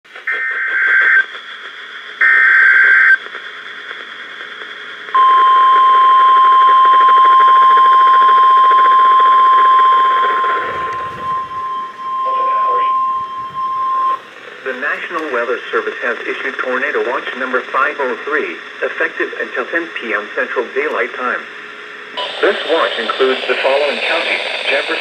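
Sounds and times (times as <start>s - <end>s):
radio static: 0.1s - 25.0s
harsh two-tone data burst: 5.2s - 14.2s
steady warning alarm tone: 5.2s - 14.3s.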